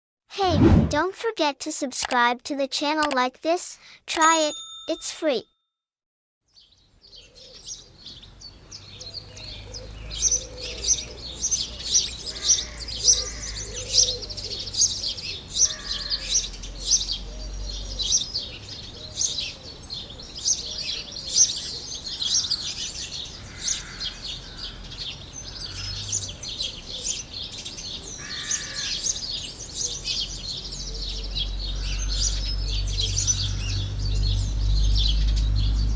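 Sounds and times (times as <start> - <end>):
low rumble: 0.4 - 1.0
small birds chirping chorus: 6.5 - 35.9.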